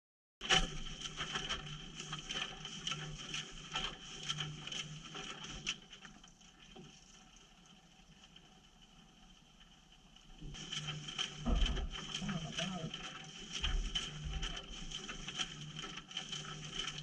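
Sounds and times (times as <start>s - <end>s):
water splashing: 10.4s - 17.0s
washing machine drum tumbling: 11.4s - 12.8s.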